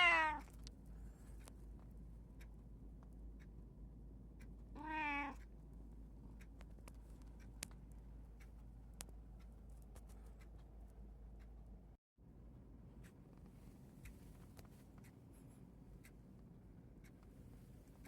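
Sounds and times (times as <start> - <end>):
cat meowing: 0.0 - 0.5, 4.8 - 5.4
steady low hum: 0.0 - 18.0.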